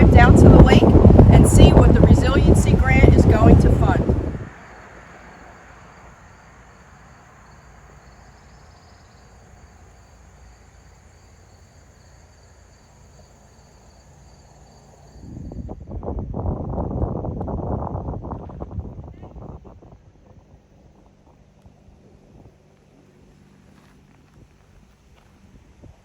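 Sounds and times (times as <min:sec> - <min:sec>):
wind on microphone: 0:00.0 - 0:04.7, 0:15.1 - 0:26.0
low rumble: 0:00.0 - 0:04.8, 0:15.2 - 0:26.0
insects trilling: 0:04.5 - 0:15.8.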